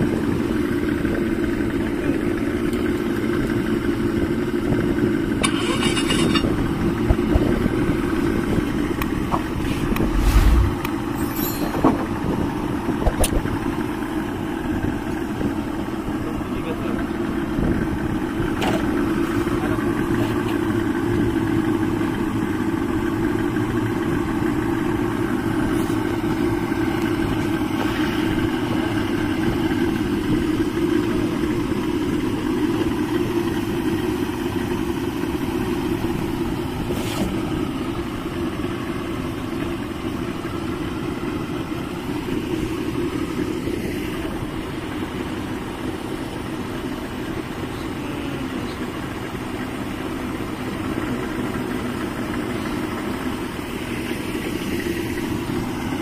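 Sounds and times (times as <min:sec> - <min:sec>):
outboard motors droning: 0:00.0 - 0:56.0.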